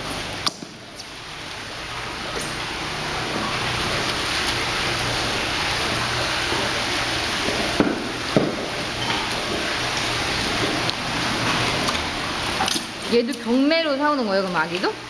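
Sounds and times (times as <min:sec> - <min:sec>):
running water splashing: 0:00.0 - 0:15.0
sharp knocks: 0:07.8 - 0:08.7.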